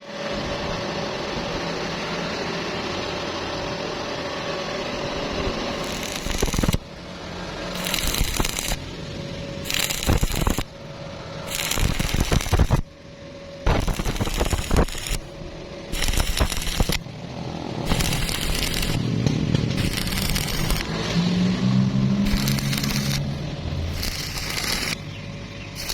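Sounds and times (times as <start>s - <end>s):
welding arc crackling and sputtering: 5.7s - 7.0s, 7.7s - 8.9s, 9.6s - 10.8s, 11.4s - 12.9s, 13.6s - 17.1s, 17.8s - 21.2s, 21.9s - 25.1s.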